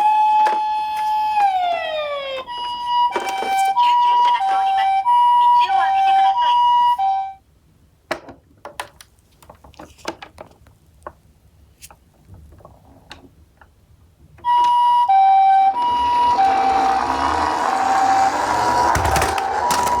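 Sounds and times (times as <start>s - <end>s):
two-tone ambulance siren: 0.0s - 7.4s, 14.4s - 20.0s.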